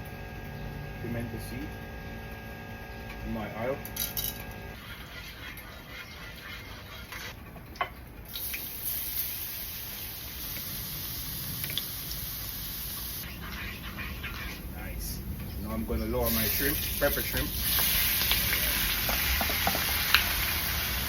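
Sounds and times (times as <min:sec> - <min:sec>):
crackles and pops of frying: 0:07.4 - 0:13.6, 0:16.3 - 0:21.0
berries sizzling in hot oil: 0:08.3 - 0:13.7, 0:15.9 - 0:21.0.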